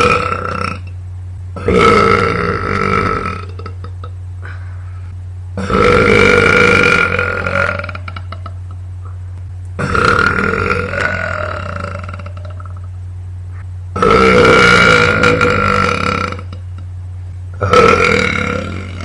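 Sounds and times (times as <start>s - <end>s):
woman burping loudly: 0.0s - 0.9s, 1.6s - 4.6s, 5.6s - 8.6s, 9.8s - 12.9s, 14.0s - 16.6s, 17.6s - 19.0s.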